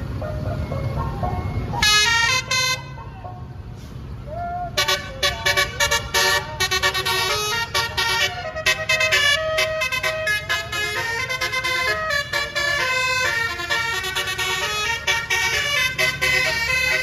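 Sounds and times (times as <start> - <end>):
low engine rumble: 0.0 - 17.0
musical bus horn blasts: 1.8 - 3.0, 4.8 - 17.0.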